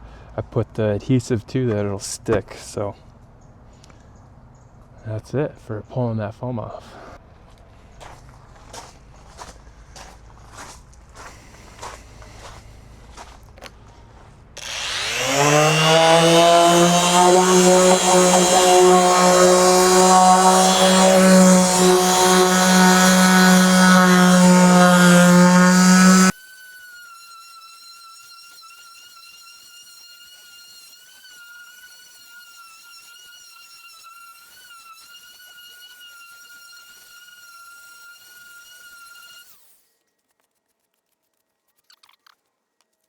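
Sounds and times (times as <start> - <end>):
palm sander humming: 9.2 - 13.4, 14.6 - 39.8.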